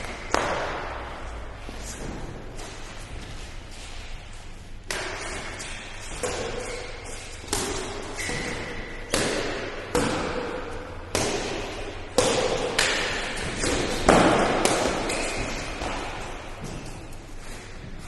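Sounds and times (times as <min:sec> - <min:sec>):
rackets hitting shuttlecock: 0:00.0 - 0:01.2, 0:04.8 - 0:16.9.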